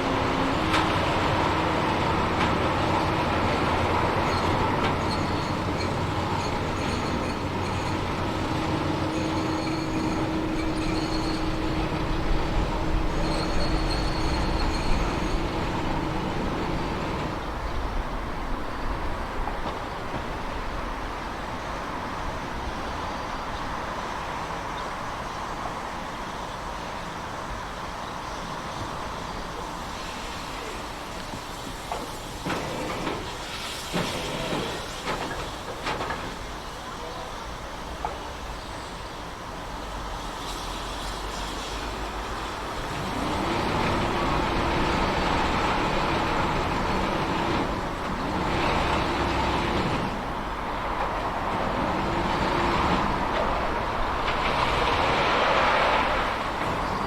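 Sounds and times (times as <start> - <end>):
train running on track: 0.0 - 57.0
high wheel squeal: 1.3 - 17.6, 28.3 - 35.5.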